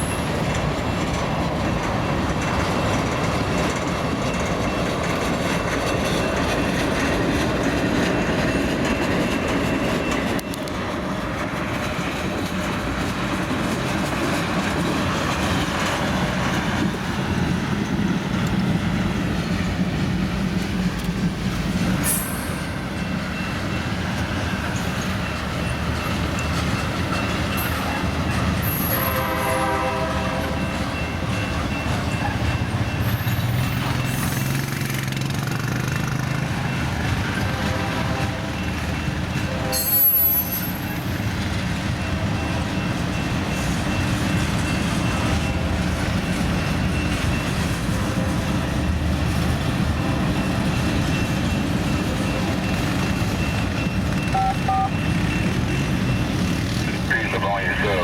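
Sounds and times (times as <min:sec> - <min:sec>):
train wheels rumbling on rails: 0:00.0 - 0:58.0
locomotive horn: 0:28.6 - 0:30.8, 0:37.4 - 0:38.6, 0:39.4 - 0:40.4, 0:54.4 - 0:55.0
high wheel squeal: 0:39.7 - 0:41.2.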